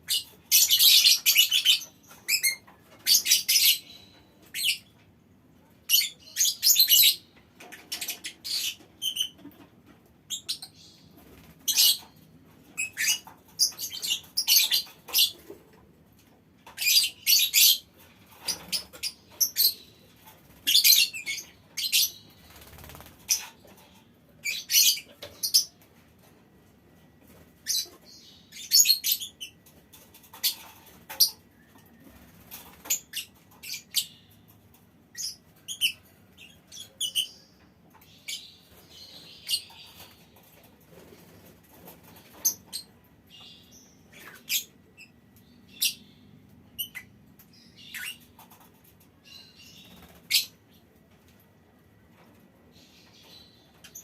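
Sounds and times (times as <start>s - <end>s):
lovebirds chattering: 27.6s - 50.6s.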